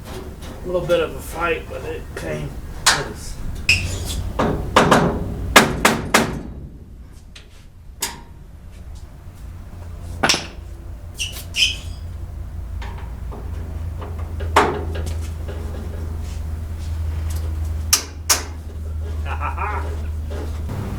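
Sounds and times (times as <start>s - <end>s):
steady low hum: 12.0s - 20.9s.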